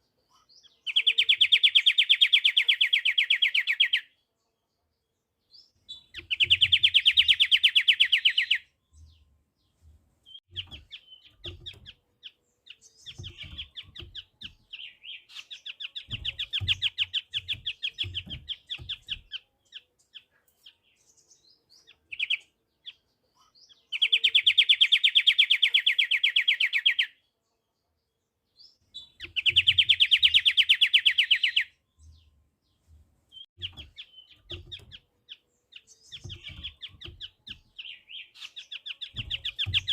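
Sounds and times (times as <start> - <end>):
bird singing rapid trills: 5.6 - 9.3, 10.3 - 27.2, 28.6 - 39.9.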